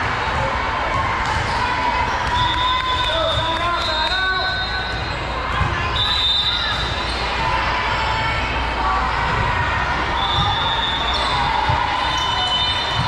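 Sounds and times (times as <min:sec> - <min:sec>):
crowd and player voices: 0:00.0 - 0:13.0
shoe squeaks: 0:10.2 - 0:13.0.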